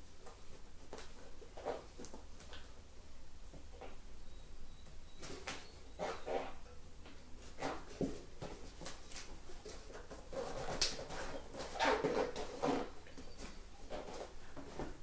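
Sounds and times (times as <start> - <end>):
rubber tire squeaking on rim: 5.1 - 6.7, 7.6 - 8.0, 10.3 - 14.3.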